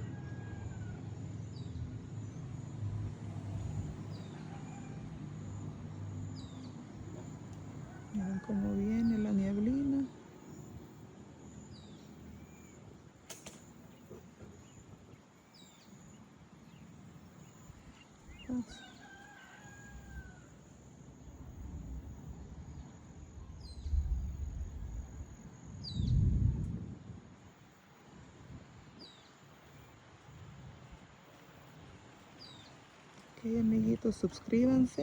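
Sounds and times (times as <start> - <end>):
rooster crowing: 0.0 - 1.2, 4.1 - 5.6, 7.6 - 9.5, 18.7 - 20.7
small birds chirping: 13.6 - 19.6.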